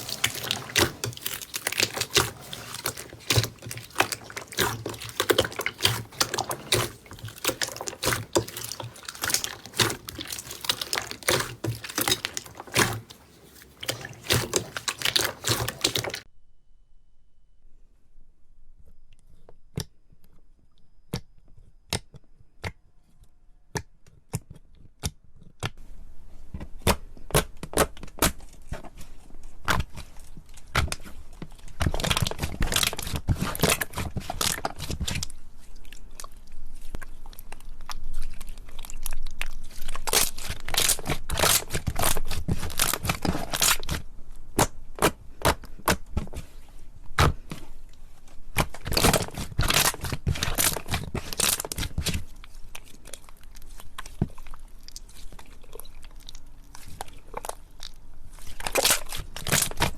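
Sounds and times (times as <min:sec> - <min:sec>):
slime clicking and crackling: 0:00.0 - 0:16.3, 0:36.0 - 0:44.0, 0:47.2 - 0:59.9.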